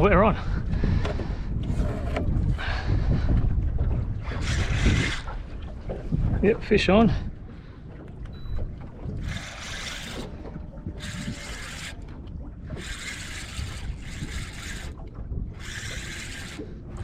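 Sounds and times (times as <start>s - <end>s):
boat engine rumble: 0.0s - 17.0s
fishing reel whirring: 4.3s - 5.4s, 9.1s - 17.0s.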